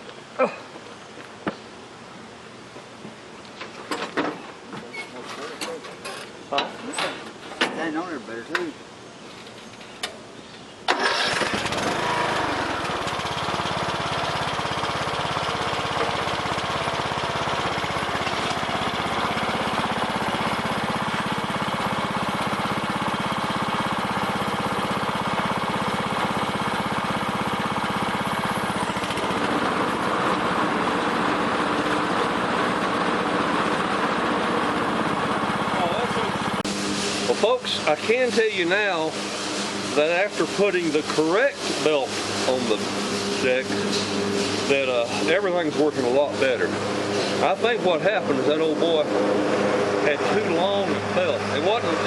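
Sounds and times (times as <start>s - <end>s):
lawn tractor engine running: 10.9s - 52.0s.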